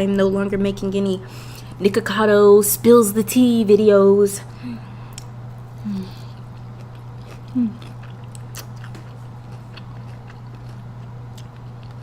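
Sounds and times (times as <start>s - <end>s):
steady low hum: 0.0s - 12.0s
person humming: 5.8s - 6.3s, 7.5s - 7.8s
chewing clicks and smacks: 6.3s - 12.0s.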